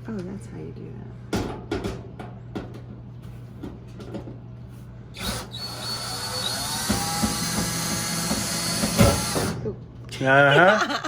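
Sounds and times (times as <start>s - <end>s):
power drill whining: 5.2s - 9.6s.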